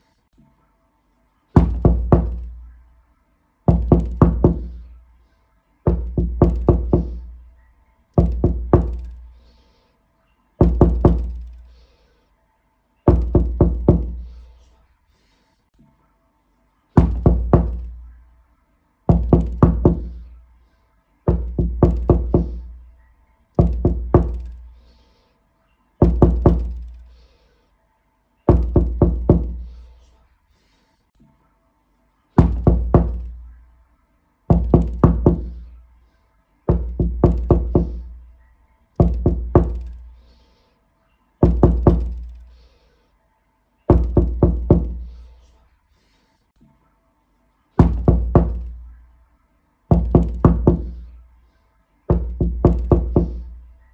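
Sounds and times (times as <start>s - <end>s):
knocking on a door: 1.6s - 2.6s, 3.7s - 4.8s, 5.9s - 7.4s, 8.2s - 9.2s, 10.6s - 11.6s, 13.1s - 14.3s, 17.0s - 18.0s, 19.1s - 20.3s, 21.3s - 22.8s, 23.6s - 24.7s, 26.0s - 27.0s, 28.5s - 29.7s, 32.4s - 33.5s, 34.5s - 35.7s, 36.7s - 38.2s, 39.0s - 40.0s, 41.4s - 42.4s, 43.9s - 45.1s, 47.8s - 48.9s, 49.9s - 51.1s, 52.1s - 53.6s.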